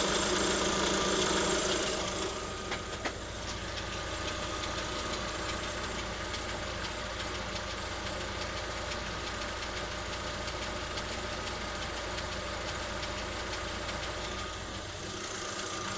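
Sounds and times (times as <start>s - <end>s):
car engine idling with knocking: 0.0s - 15.9s.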